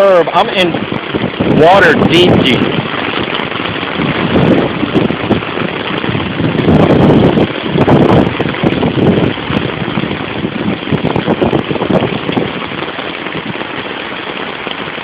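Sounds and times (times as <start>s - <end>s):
heavy rain and floodwater rushing: 0.0s - 15.0s.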